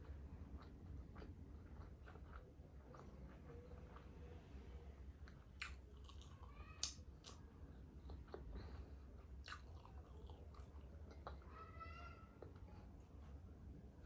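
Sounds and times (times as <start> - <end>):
person chewing sweets: 0.0 - 4.3, 5.0 - 11.5
mouth clicks and smacks: 5.6 - 7.4.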